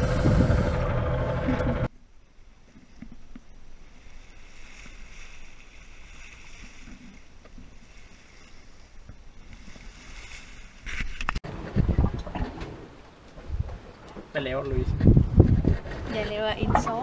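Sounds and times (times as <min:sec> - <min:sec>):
water rushing along boat hull: 0:00.0 - 0:01.9
wind rumble on microphone: 0:00.0 - 0:01.9, 0:11.1 - 0:14.0, 0:14.6 - 0:17.0.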